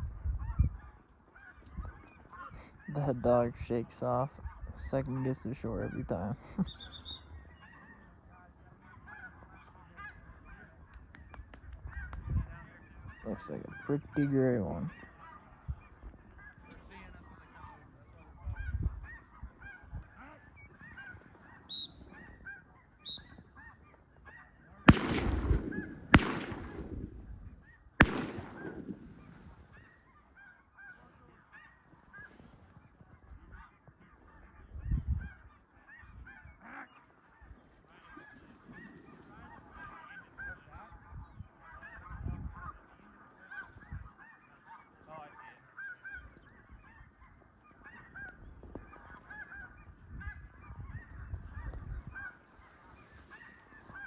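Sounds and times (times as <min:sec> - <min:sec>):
geese honking: 0:00.4 - 0:10.8, 0:11.9 - 0:54.0
shotgun shots: 0:24.9 - 0:27.3, 0:28.0 - 0:29.4.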